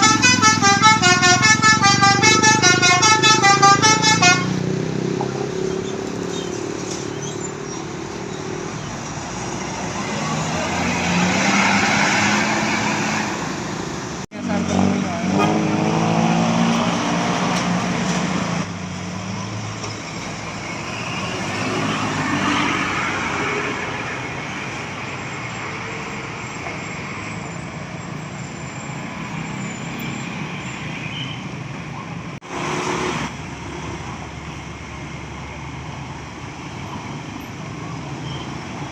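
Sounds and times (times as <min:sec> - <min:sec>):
buses and traffic passing: 0:00.0 - 0:38.9.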